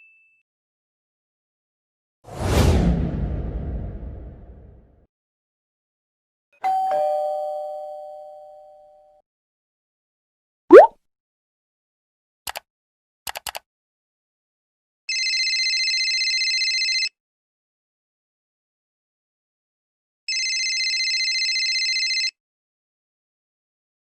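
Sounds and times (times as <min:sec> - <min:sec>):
ding-dong doorbell: 0:06.6 - 0:09.2
cartoon rising pitch slide: 0:10.7 - 0:10.9
computer mouse clicks: 0:13.3 - 0:13.6
cellphone ringtone: 0:15.1 - 0:17.1, 0:20.3 - 0:22.4.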